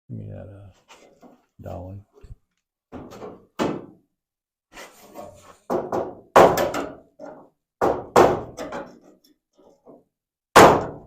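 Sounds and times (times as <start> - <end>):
hammer knocking on sheet metal: 5.7 - 7.0, 7.8 - 8.8, 10.6 - 11.0.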